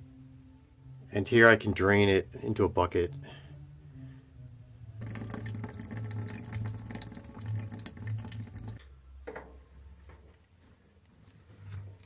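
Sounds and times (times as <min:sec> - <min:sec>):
water splashing into a bucket: 0:05.0 - 0:08.8.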